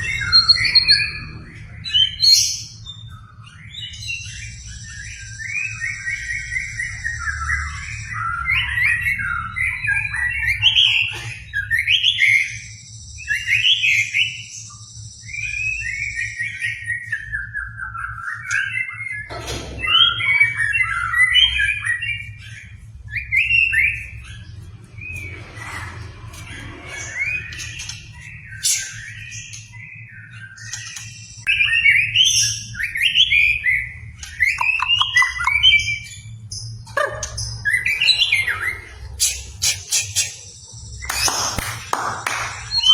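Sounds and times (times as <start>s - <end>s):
bird singing whistled phrases: 11.5s - 25.2s, 36.9s - 42.9s.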